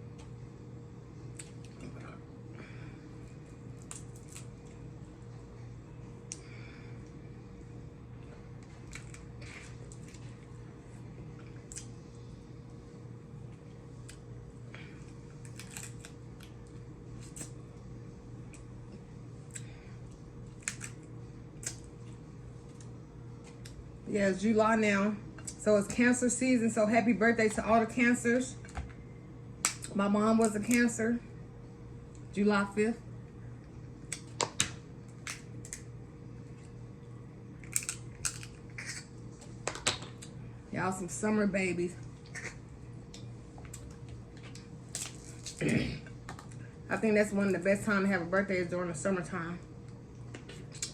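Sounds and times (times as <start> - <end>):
faint steady hum: 0.0 - 50.9
crab shells cracking: 15.4 - 16.5, 20.5 - 21.8, 37.6 - 39.0.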